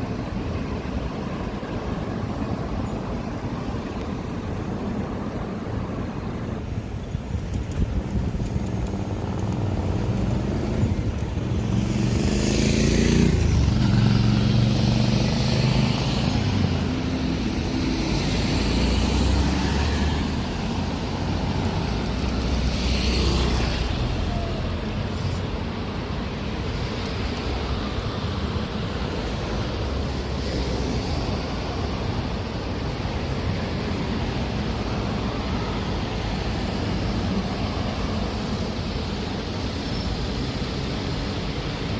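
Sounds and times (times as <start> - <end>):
city street traffic rumbling: 0.0 - 41.9
vehicle passing by: 11.5 - 24.7.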